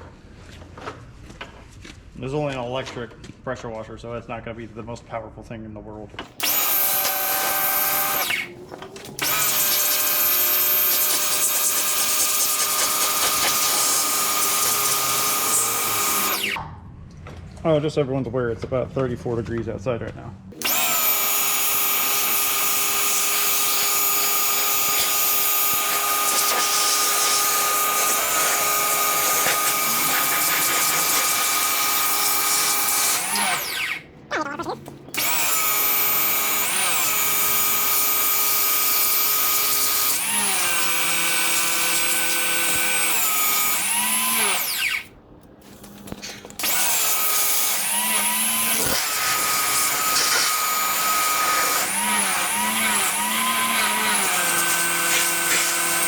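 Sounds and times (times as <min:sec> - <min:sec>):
pressure washer motor whine: 0:06.4 - 0:16.6, 0:20.6 - 0:34.0, 0:46.6 - 0:56.0
water spray hissing: 0:25.9 - 0:31.6.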